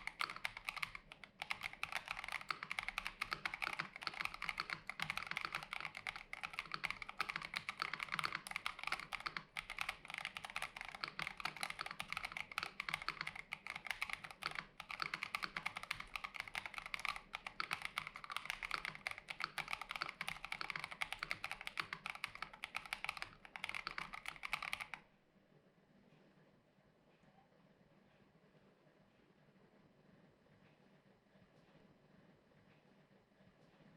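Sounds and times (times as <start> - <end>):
fast mechanical keyboard typing: 0.0 - 25.0
faint room hiss: 0.0 - 33.9.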